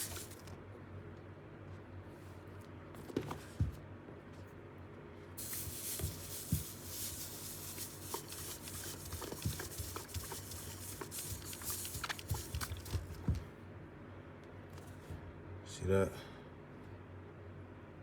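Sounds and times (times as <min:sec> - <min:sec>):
steam hissing from iron: 0:05.4 - 0:07.7.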